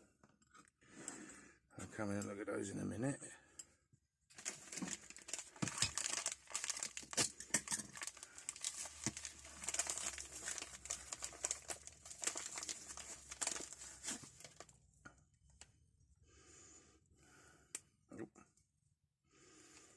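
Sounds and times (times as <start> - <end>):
packaging wrap crinkling: 4.3 - 14.8.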